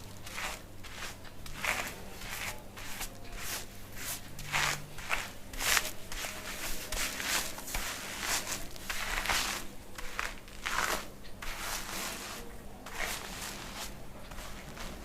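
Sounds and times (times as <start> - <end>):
fingers scrubbing lathered hair: 0.0 - 15.0.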